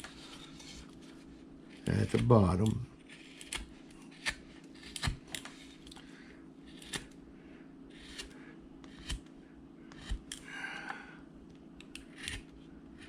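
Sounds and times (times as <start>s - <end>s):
faint steady hum: 0.0s - 13.0s
gouge carving wood: 3.1s - 5.2s, 7.9s - 9.2s, 12.0s - 12.4s.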